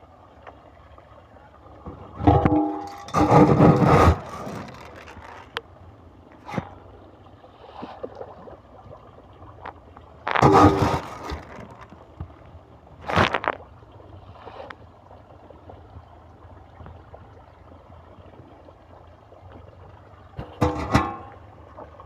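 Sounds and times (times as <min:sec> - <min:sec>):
low steady background noise: 0:00.0 - 0:22.0
fish splashing at water surface: 0:02.2 - 0:05.6, 0:10.3 - 0:12.2.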